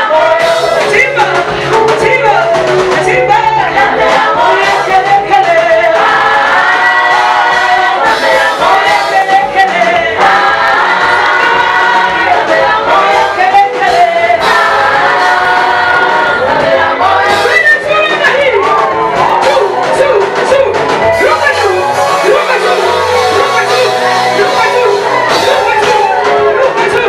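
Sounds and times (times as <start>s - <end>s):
choir singing in harmony: 0.0s - 17.8s.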